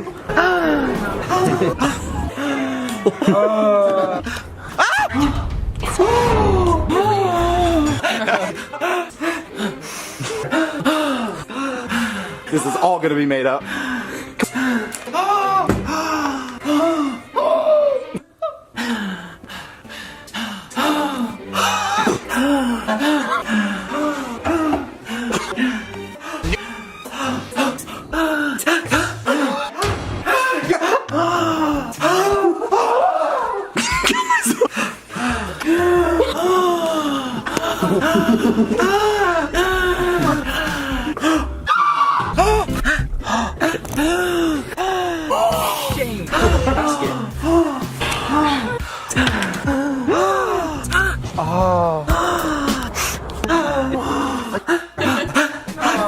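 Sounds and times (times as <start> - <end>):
man gasping: 52.1 - 56.0.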